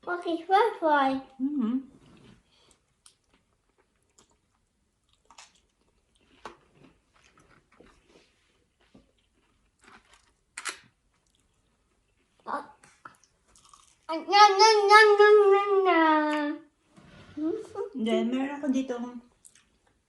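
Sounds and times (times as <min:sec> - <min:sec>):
crunchy chewing of fried food: 0:02.6 - 0:14.1.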